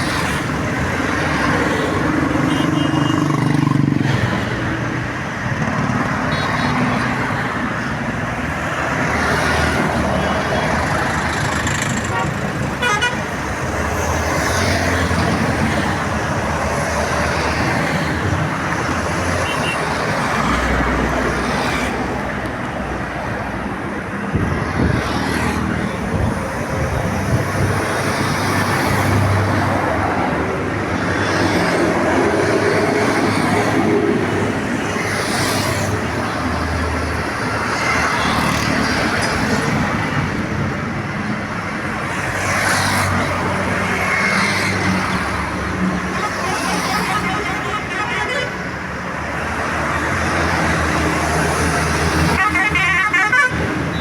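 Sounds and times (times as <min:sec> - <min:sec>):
rumble of engines and tyres: 0:00.0 - 0:54.0
vehicles passing: 0:00.0 - 0:54.0.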